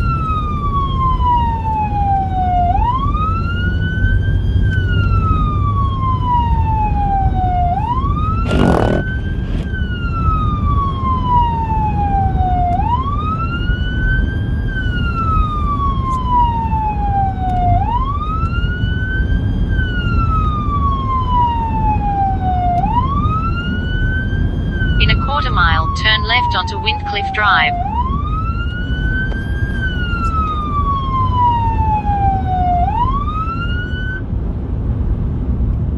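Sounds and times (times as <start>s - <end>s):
road noise: 0.0s - 35.9s
electronic siren wailing: 4.9s - 14.1s, 20.2s - 34.2s.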